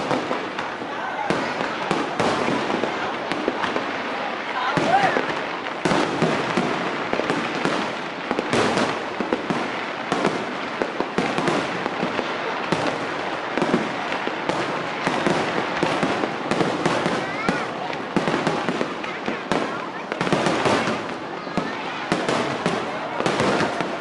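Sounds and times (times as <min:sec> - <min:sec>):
continuous crackling hiss: 0:00.0 - 0:24.0
fireworks bangs and crackles: 0:00.0 - 0:24.0.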